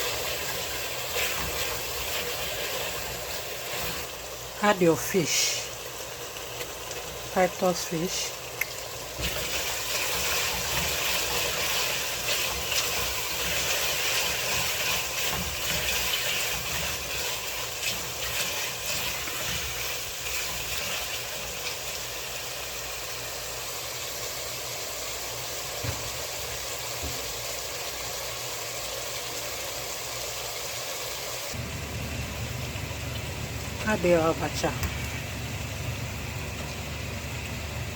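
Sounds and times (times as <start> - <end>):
fish sizzling in hot oil: 0.0 - 37.9.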